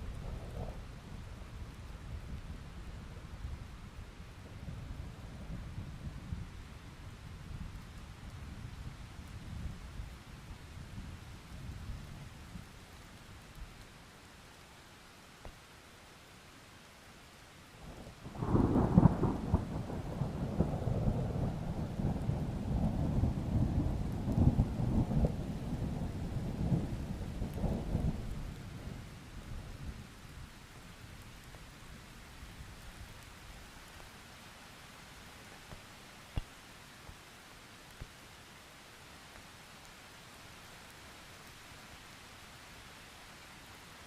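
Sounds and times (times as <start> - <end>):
faint steady rain: 0.0 - 44.0
thunder clap and rumble: 18.3 - 29.1.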